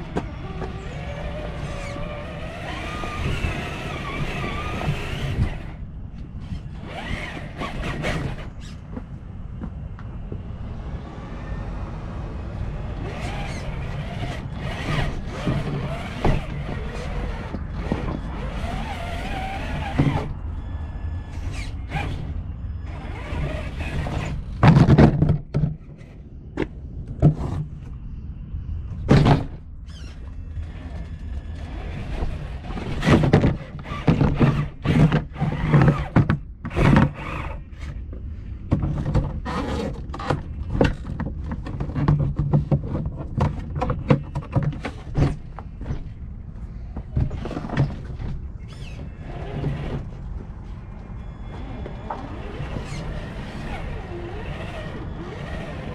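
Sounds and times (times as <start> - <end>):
constant low rumble: 0.0 - 55.9
toy car motor humming: 0.4 - 5.8, 51.8 - 55.9
car knocking and scraping on rock: 13.1 - 20.3, 23.2 - 27.7, 31.9 - 37.9, 38.7 - 46.2.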